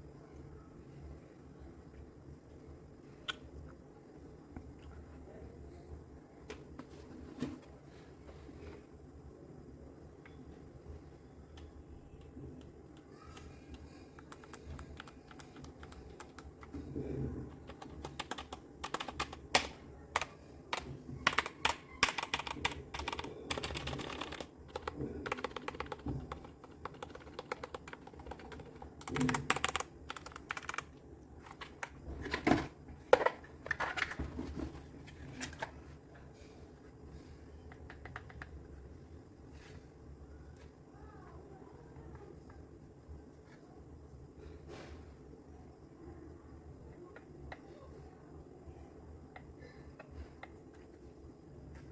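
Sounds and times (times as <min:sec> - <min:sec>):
mechanical keyboard typing: 0:13.2 - 0:16.7, 0:17.4 - 0:32.0, 0:37.8 - 0:38.5.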